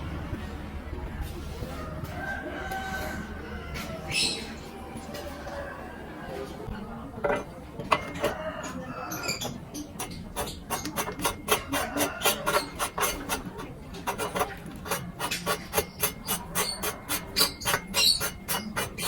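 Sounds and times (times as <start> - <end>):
hand sanding strokes: 10.0 - 19.0.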